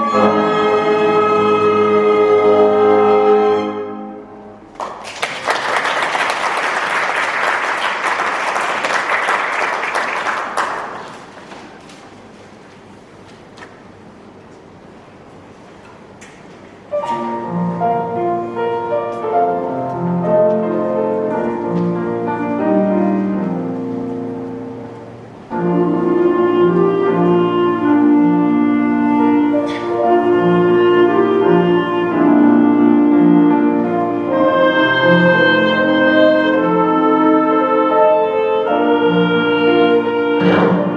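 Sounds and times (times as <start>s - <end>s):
orchestra playing: 0.0s - 4.7s, 16.9s - 40.9s.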